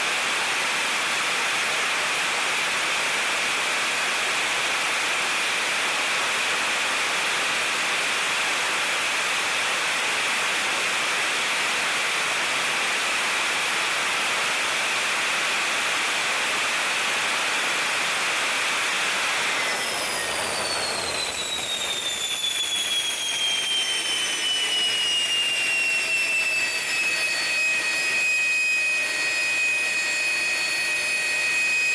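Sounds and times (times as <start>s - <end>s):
high turbine whine: 0.2s - 31.9s
jet engine rushing: 18.2s - 31.4s.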